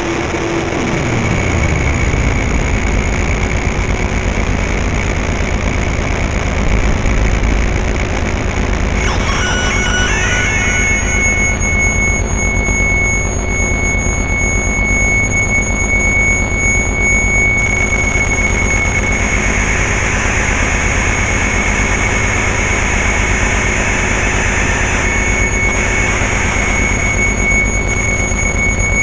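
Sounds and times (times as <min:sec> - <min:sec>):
high whistling synth tone: 0:09.0 - 0:29.0.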